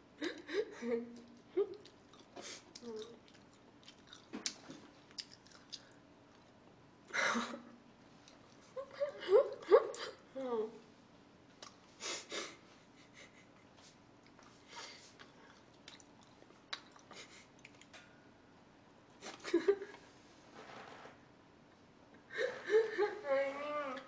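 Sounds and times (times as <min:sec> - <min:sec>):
small mouth clicks: 0:01.2 - 0:06.5, 0:11.6 - 0:11.8
chewing and mouth sounds: 0:01.2 - 0:06.7, 0:11.6 - 0:11.8, 0:14.2 - 0:18.0.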